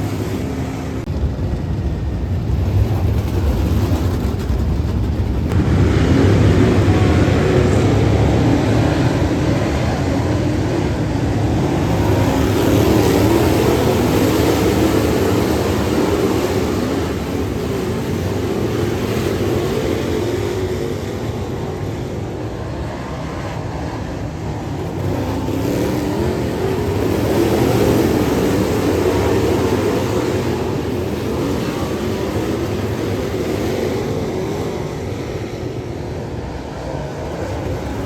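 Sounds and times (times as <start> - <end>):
race car engines revving: 0.0 - 38.0.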